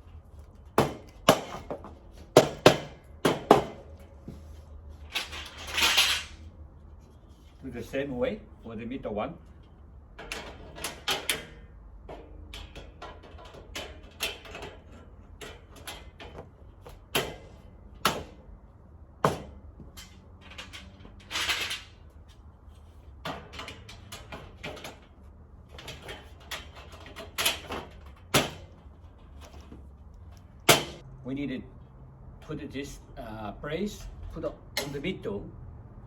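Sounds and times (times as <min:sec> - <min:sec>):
steel shelving parts knocking: 0:00.7 - 0:04.5, 0:10.2 - 0:18.6, 0:19.2 - 0:22.0, 0:23.2 - 0:29.9, 0:30.6 - 0:31.0.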